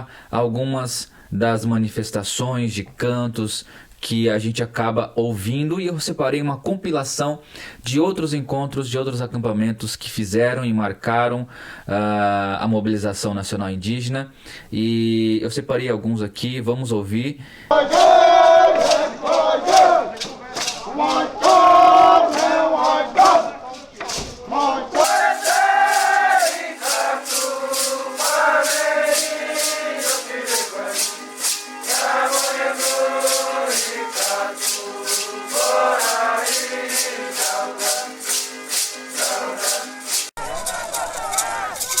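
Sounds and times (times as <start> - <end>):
group singing long held notes: 17.7 - 41.8
rattles shaken in a beat: 17.9 - 42.0.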